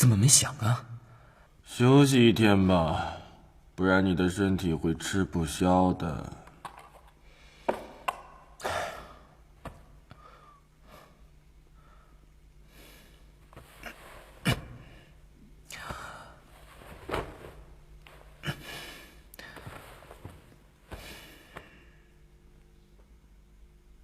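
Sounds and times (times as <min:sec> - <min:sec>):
person breathing heavily: 0:07.2 - 0:08.0, 0:08.6 - 0:09.4, 0:10.1 - 0:17.0, 0:18.1 - 0:22.2.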